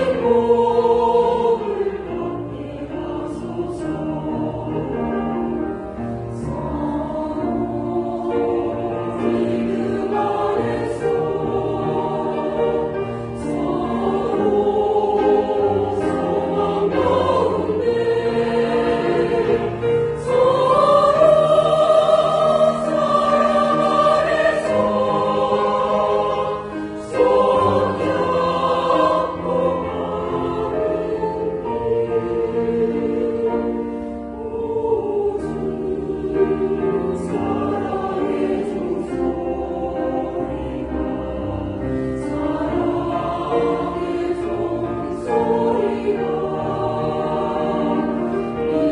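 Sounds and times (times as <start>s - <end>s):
church choir singing a hymn: 0.0s - 48.9s.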